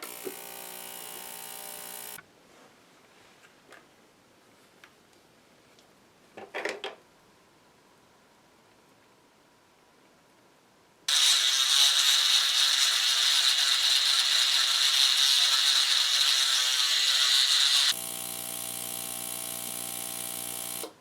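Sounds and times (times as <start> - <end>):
steady motor hum: 0.0 - 2.2, 11.1 - 21.0
power tool rushing noise: 11.1 - 20.9.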